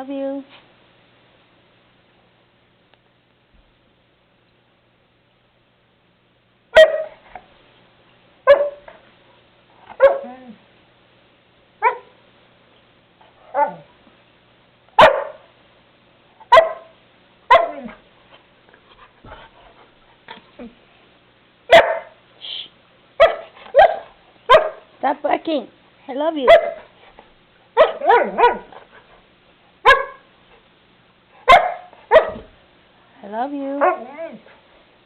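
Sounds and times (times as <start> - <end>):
dog barking: 6.7 - 7.2, 8.4 - 8.9, 10.0 - 10.3, 11.8 - 12.2, 13.5 - 13.9, 15.0 - 15.5, 16.5 - 18.0, 21.7 - 22.2, 23.2 - 24.9, 26.4 - 26.9, 27.8 - 28.7, 29.8 - 30.3, 31.4 - 32.5, 33.8 - 34.1.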